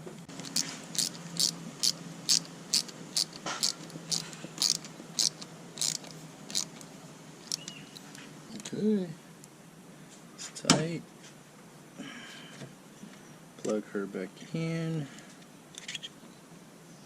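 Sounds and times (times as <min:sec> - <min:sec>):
ratchet wrench clicking: 0:00.3 - 0:06.8, 0:07.4 - 0:08.2.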